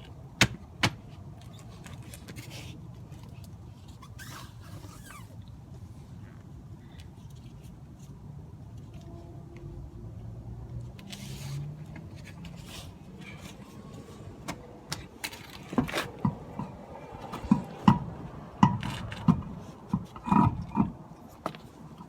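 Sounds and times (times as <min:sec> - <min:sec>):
tools and parts clattering: 0:11.9 - 0:22.0.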